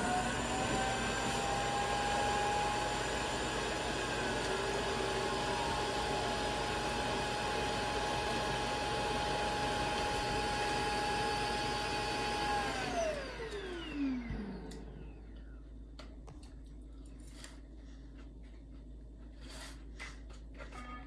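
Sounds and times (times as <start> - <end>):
suction motor whining: 0.0 - 15.1.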